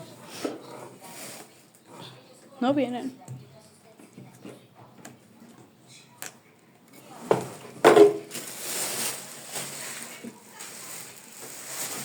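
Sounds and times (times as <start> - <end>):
packaging rustling: 8.3 - 12.0.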